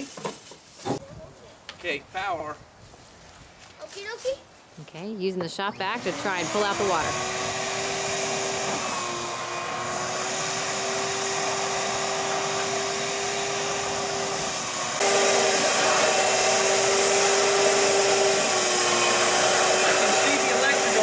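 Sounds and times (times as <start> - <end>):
shop vacuum sucking water: 6.0 - 21.0.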